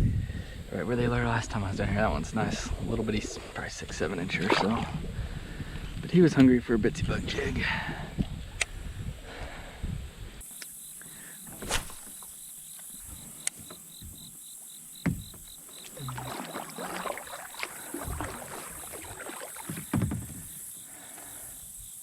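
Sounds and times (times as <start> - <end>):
water swishing: 2.5 - 5.4, 15.0 - 21.4
high insect buzz: 10.4 - 22.0
knocks on kayak hull: 15.0 - 19.0, 19.6 - 20.6.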